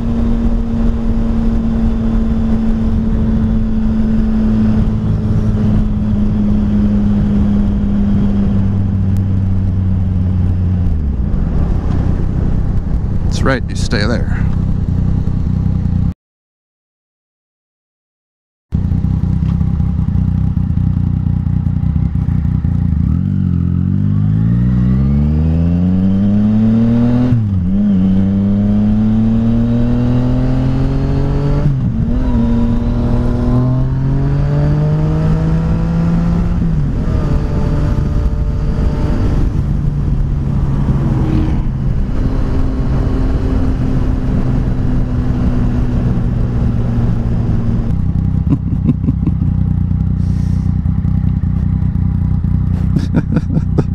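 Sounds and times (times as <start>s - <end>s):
wind rumble on microphone: 0.0s - 16.1s, 23.3s - 50.3s
motorcycle engine accelerating: 0.0s - 16.2s, 18.7s - 53.9s.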